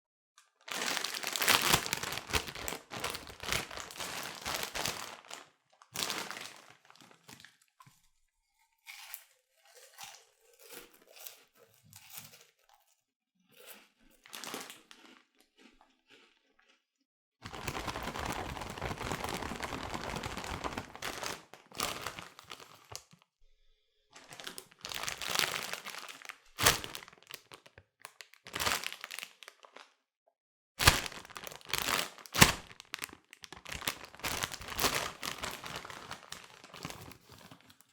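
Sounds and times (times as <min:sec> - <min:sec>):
snack bag crinkling and tearing: 0:00.6 - 0:07.5, 0:13.7 - 0:16.8, 0:17.4 - 0:23.2, 0:24.2 - 0:29.9, 0:30.8 - 0:37.9.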